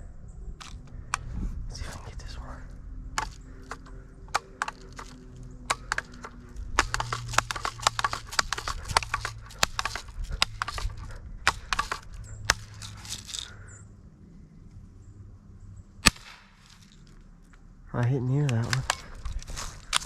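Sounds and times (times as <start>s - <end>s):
dry leaves crackling underfoot: 18.7s - 20.0s.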